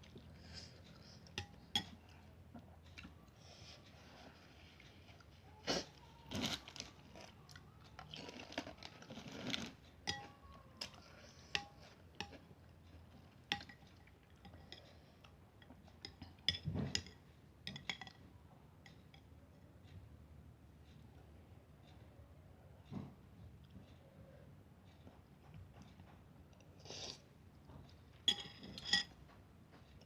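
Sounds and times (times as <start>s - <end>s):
chewing: 0.0s - 15.4s
spoon clinking against bowl: 10.0s - 10.4s, 28.2s - 29.2s.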